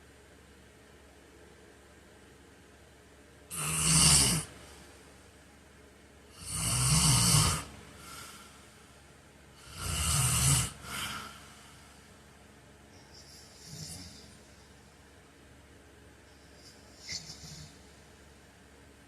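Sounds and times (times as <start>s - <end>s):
man snoring: 3.5s - 4.6s, 6.3s - 8.5s, 9.6s - 11.7s, 13.2s - 14.5s, 16.6s - 18.0s
soft breath: 8.0s - 9.2s, 10.8s - 12.3s.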